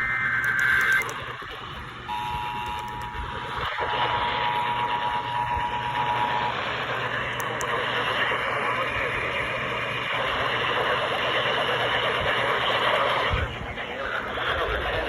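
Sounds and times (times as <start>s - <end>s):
harsh warbling data buzz: 0.0s - 15.0s
radio static hiss: 0.0s - 15.0s
two-tone attention signal: 2.1s - 3.3s.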